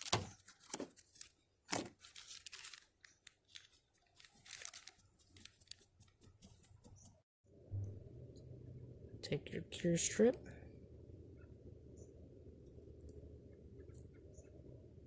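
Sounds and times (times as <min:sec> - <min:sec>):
plastic packaging crinkling: 0:00.0 - 0:06.2
faint low hum: 0:06.9 - 0:15.0.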